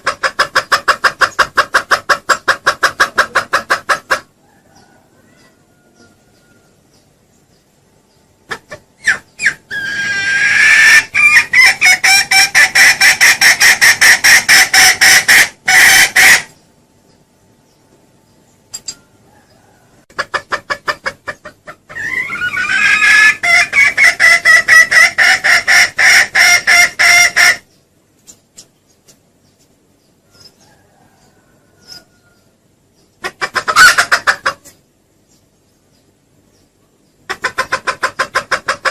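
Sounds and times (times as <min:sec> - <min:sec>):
junglefowl rapid clucking call: 0:00.0 - 0:06.2, 0:08.5 - 0:16.6, 0:20.1 - 0:27.7, 0:33.2 - 0:34.8, 0:37.3 - 0:38.9.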